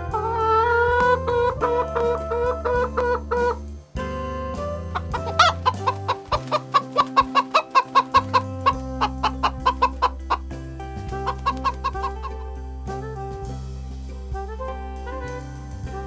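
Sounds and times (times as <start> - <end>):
background music: 0.0 - 16.0
chicken clucking: 5.2 - 8.4, 9.0 - 10.4, 11.2 - 12.3.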